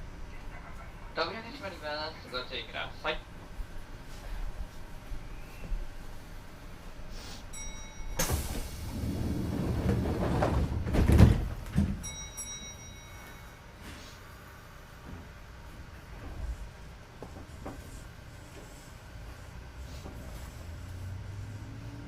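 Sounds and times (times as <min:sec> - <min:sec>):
train doors sliding shut: 0:08.0 - 0:12.1
heavy door thud: 0:08.2 - 0:12.0.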